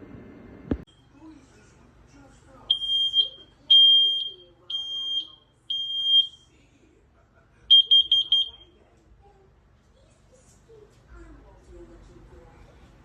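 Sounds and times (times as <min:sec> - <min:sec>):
alarm beeping: 0:02.7 - 0:06.4, 0:07.7 - 0:08.6.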